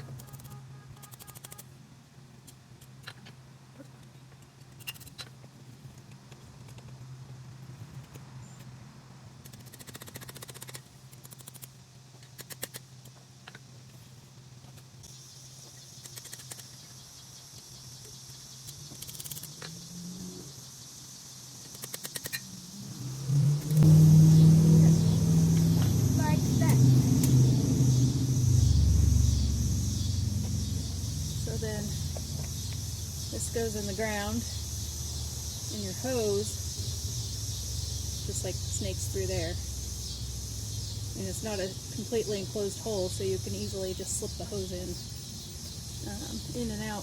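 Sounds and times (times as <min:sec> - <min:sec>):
steady low hum: 0:10.9 - 0:47.0.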